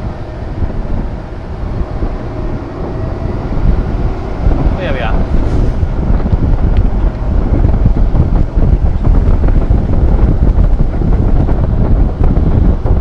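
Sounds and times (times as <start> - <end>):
lorry engine rumble: 0.0 - 13.0
wind buffeting microphone: 0.0 - 13.0.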